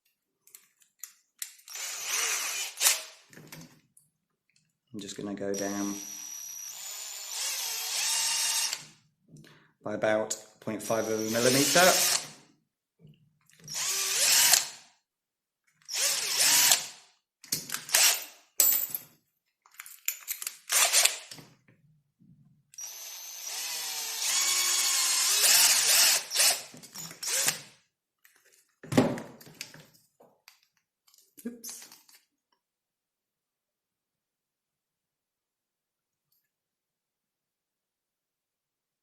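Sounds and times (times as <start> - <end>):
power drill motor whine: 13.7 - 14.6, 22.8 - 27.6.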